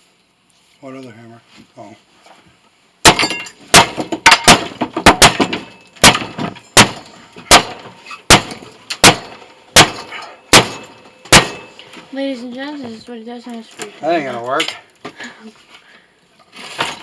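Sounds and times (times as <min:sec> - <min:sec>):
hammer striking metal: 0:03.0 - 0:11.8.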